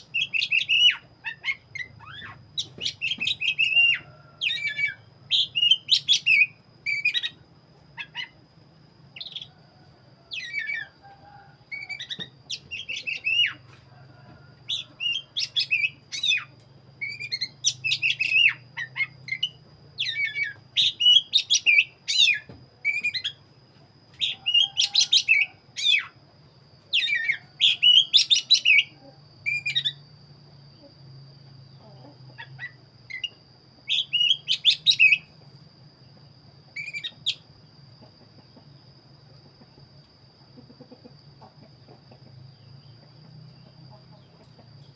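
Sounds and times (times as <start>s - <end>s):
bird singing chirps and whistles: 0.0s - 7.4s, 10.3s - 11.0s, 11.7s - 13.6s, 14.7s - 23.5s, 24.2s - 26.2s, 26.9s - 30.0s, 32.4s - 35.3s, 36.8s - 37.5s.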